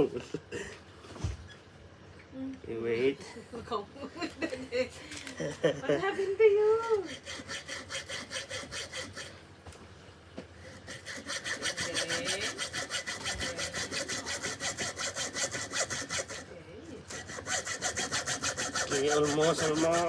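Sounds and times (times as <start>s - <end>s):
hand saw cutting bamboo: 6.8s - 9.4s, 10.6s - 20.0s.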